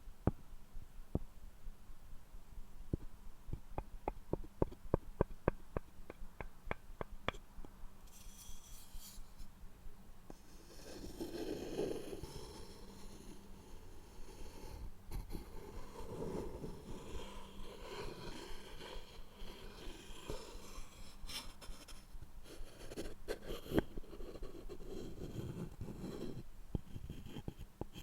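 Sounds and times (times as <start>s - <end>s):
scratching on wooden surface: 10.4s - 21.9s.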